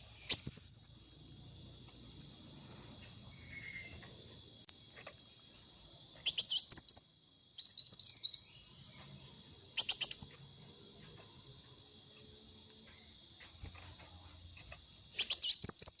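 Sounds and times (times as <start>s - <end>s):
bird chittering song: 0.0s - 1.0s, 3.3s - 4.0s, 6.2s - 9.0s, 9.8s - 10.8s, 14.6s - 16.0s.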